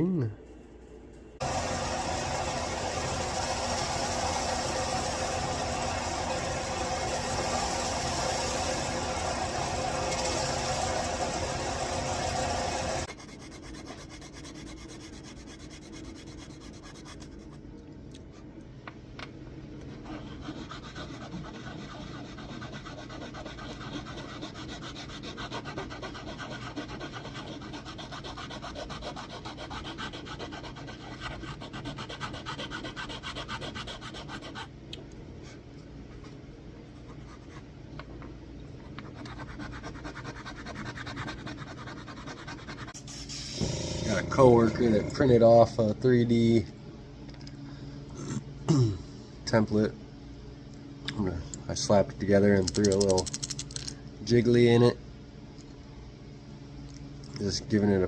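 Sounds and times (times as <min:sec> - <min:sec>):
sanding abrasive rubbing: 0:01.4 - 0:17.3, 0:20.1 - 0:34.6.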